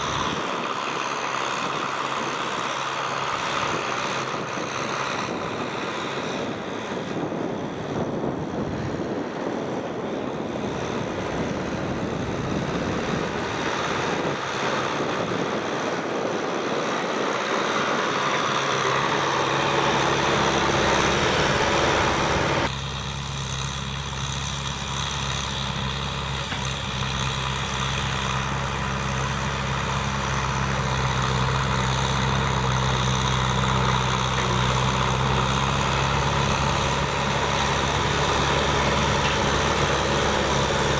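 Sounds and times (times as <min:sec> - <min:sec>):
tractor diesel engine running: 0:00.0 - 0:07.8, 0:08.9 - 0:40.9.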